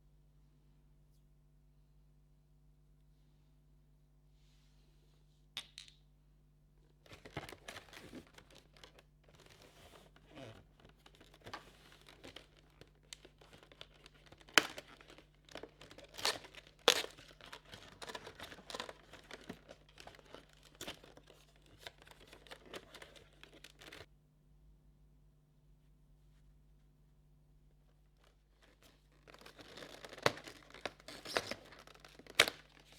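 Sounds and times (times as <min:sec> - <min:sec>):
packaging tearing and crinkling: 0:07.1 - 0:24.1, 0:28.6 - 0:32.9.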